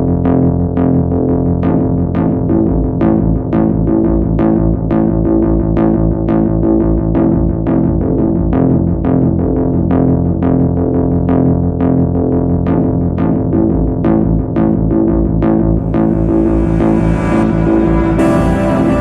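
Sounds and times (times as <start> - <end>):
synthesizer playing fast repeated notes: 12.8 - 19.0.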